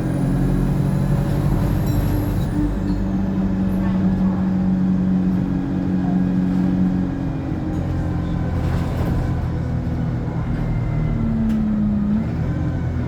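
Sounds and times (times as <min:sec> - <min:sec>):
bus engine drone: 0:00.0 - 0:13.0.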